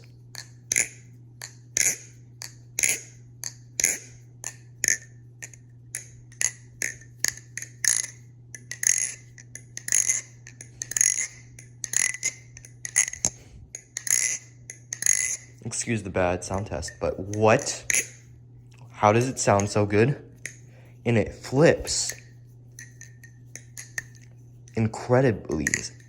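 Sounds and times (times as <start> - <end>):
butterfly knife metallic clicks: 4.8 - 15.5.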